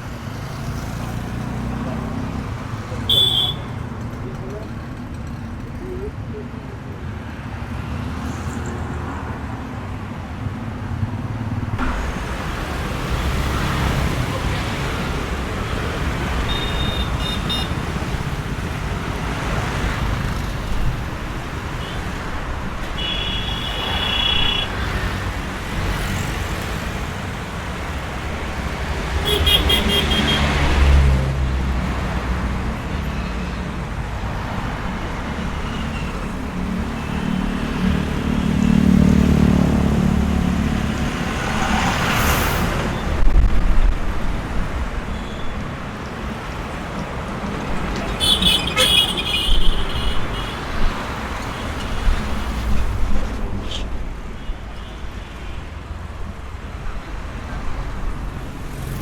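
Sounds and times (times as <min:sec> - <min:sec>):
traffic engine and tyre noise: 0:00.0 - 0:59.0
vehicle horn beeps: 0:03.1 - 0:03.8, 0:16.4 - 0:17.8, 0:23.0 - 0:24.8, 0:48.2 - 0:50.6.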